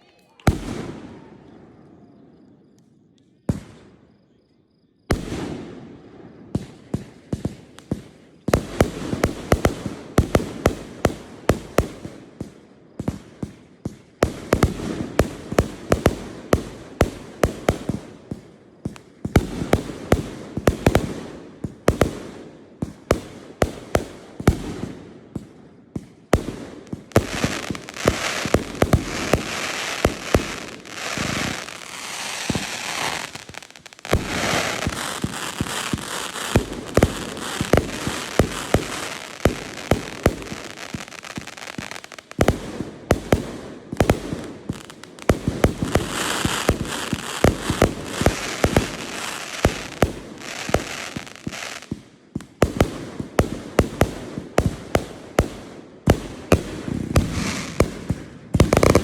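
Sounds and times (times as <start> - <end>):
fireworks bursting: 0.0 - 2.2, 5.1 - 59.0
fireworks crackle: 26.0 - 59.0.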